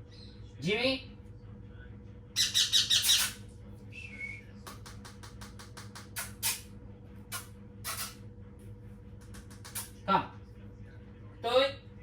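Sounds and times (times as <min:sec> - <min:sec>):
parrot high chirp: 0:02.4 - 0:03.4
parrot squawk: 0:02.4 - 0:03.4, 0:07.3 - 0:08.2.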